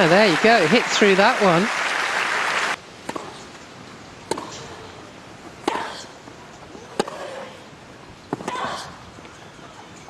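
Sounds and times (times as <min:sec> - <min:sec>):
tennis ball struck by rackets: 0:04.2 - 0:04.8, 0:05.6 - 0:06.0, 0:06.9 - 0:07.4.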